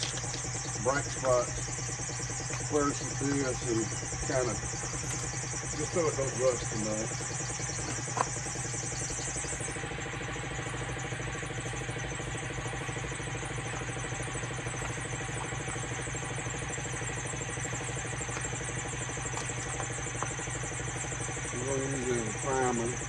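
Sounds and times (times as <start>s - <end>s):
motor running with mechanical hum: 0.0s - 23.0s.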